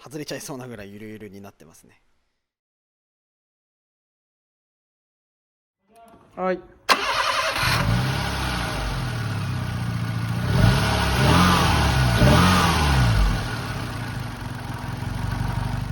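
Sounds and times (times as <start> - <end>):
car engine revving: 6.9 - 15.9.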